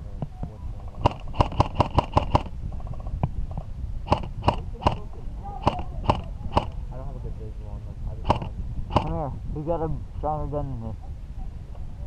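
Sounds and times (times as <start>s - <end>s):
low rumble: 0.0s - 12.0s
airsoft guns firing: 1.0s - 2.5s, 4.1s - 6.8s, 8.3s - 9.2s.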